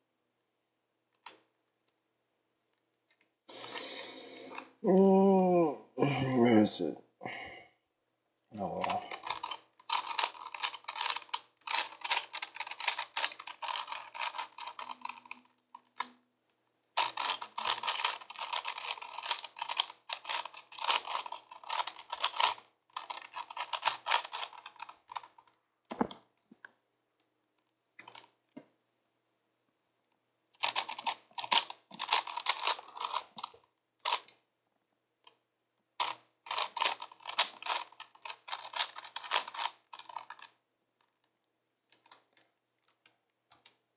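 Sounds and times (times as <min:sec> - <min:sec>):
puzzle cube plastic clicking: 0:08.8 - 0:16.2, 0:17.0 - 0:26.8, 0:28.0 - 0:28.4, 0:30.6 - 0:34.4, 0:36.0 - 0:43.8.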